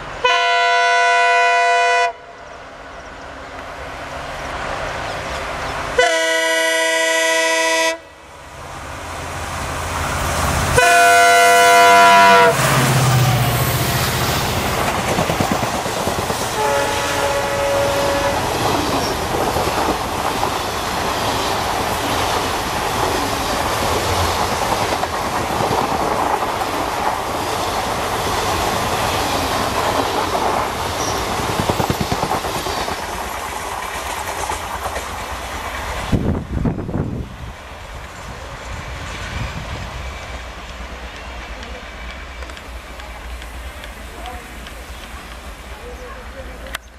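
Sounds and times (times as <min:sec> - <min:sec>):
train horn: 0:00.2 - 0:02.4, 0:06.0 - 0:08.3, 0:10.7 - 0:12.9, 0:16.5 - 0:18.8
train wheels clickety-clack: 0:12.6 - 0:36.5, 0:37.9 - 0:46.9.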